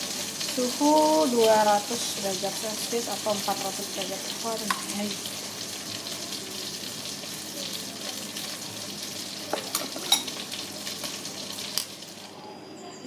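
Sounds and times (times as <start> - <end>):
food sizzling and crackling: 0.0 - 12.6
utensil clinking against cookware: 9.5 - 10.5.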